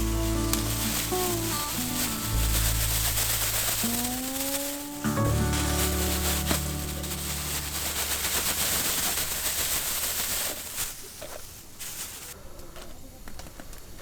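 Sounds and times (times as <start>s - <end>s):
campfire crackling and popping: 0.0s - 10.6s.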